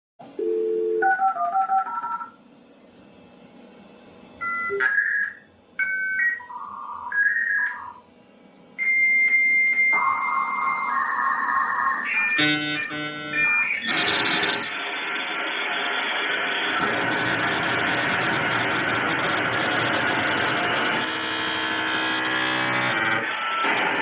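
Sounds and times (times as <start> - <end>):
dial tone: 0.4 - 2.3.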